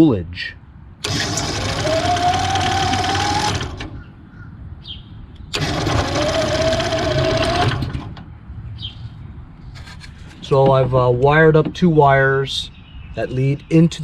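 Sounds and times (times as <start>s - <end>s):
starter-generator cranking engine: 1.0s - 4.1s, 5.5s - 8.3s.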